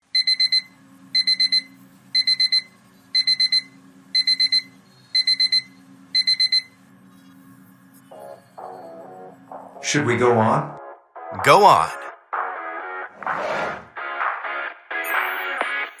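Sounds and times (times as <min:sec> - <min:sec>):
electronic alarm beeping: 0:00.0 - 0:07.5.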